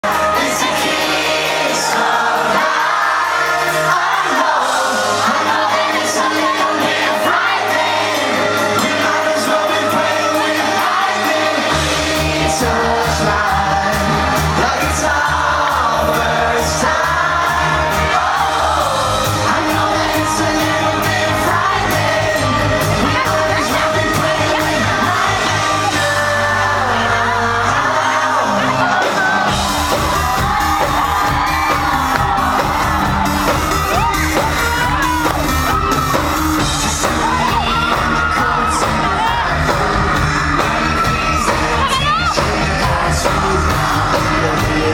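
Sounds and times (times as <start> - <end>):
boy band singing: 0.0 - 44.9
crowd shouting: 0.0 - 44.9
loud amplified backing music: 0.0 - 44.9
pulsing bass beat: 11.5 - 27.5, 29.2 - 44.9.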